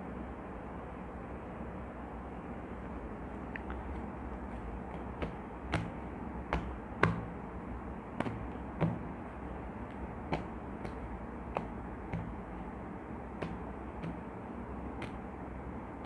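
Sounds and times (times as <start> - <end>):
steady background hiss: 0.0 - 16.0
cards tapping and clicking: 3.6 - 7.5, 8.2 - 12.7, 13.3 - 14.3, 14.9 - 15.3.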